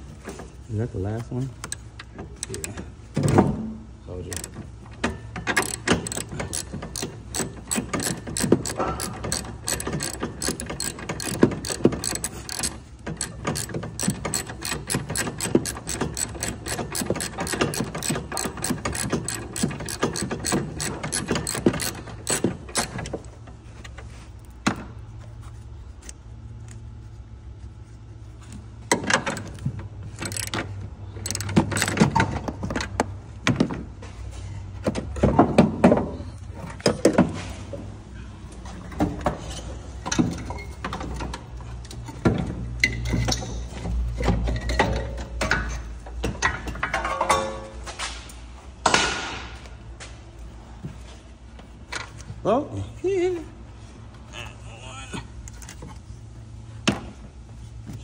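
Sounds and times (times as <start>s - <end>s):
ratchet wrench clicking: 2.4s - 2.8s, 4.3s - 4.6s, 5.5s - 23.1s, 29.3s - 32.1s.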